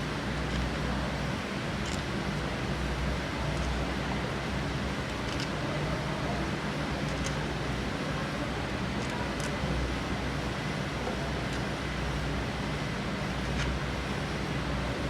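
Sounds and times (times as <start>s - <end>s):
background rumble and hiss: 0.0s - 15.0s.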